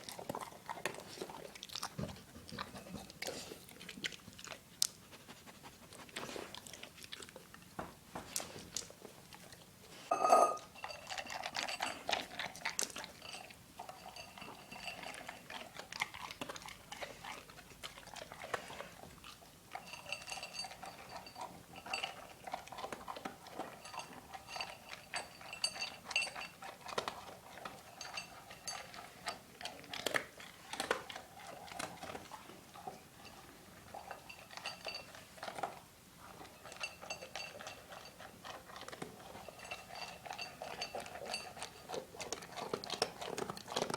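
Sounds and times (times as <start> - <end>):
dog chewing and crunching food: 0.0 - 43.9
faint ringing tone: 10.1 - 10.7.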